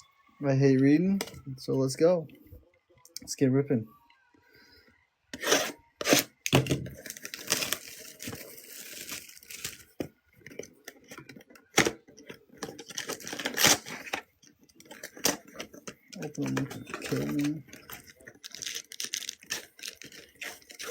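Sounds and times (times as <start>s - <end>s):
packaging ripping and crinkling: 6.9s - 12.0s, 12.6s - 14.2s, 14.8s - 20.9s.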